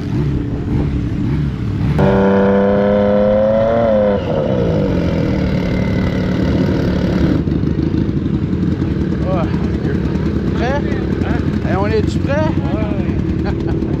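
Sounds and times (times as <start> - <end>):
snowmobile engine revving: 0.0 - 7.5.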